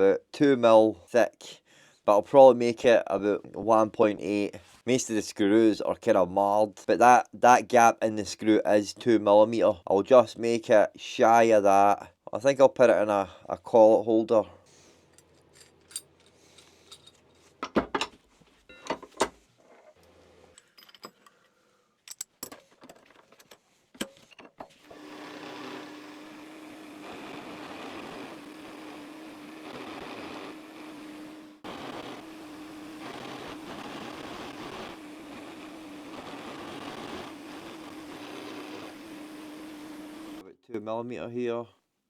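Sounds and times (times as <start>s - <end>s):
milling machine humming: 24.8s - 40.4s.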